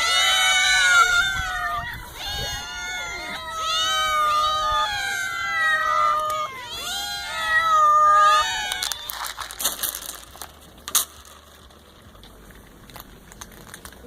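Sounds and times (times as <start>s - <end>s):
cats meowing: 0.0s - 10.4s
clicks and rustling: 8.5s - 14.0s.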